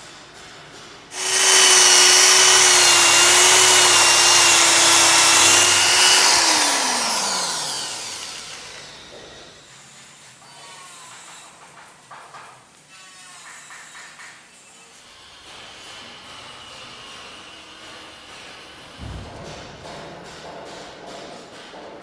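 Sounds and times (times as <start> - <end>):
power tool whining: 1.1 - 9.6.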